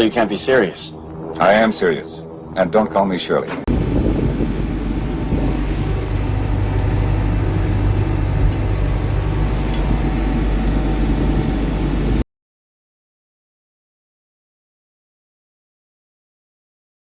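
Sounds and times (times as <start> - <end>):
tractor engine droning: 3.7 - 12.2.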